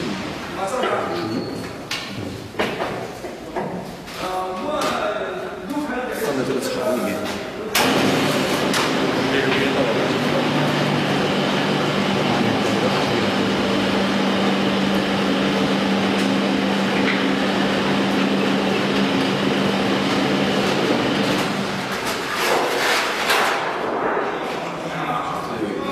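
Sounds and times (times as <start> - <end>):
press machine humming and clattering: 7.7 - 22.3.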